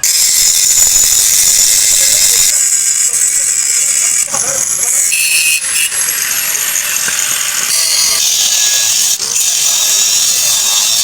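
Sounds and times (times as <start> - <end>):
power tool high-pitched hiss: 0.0 - 11.0.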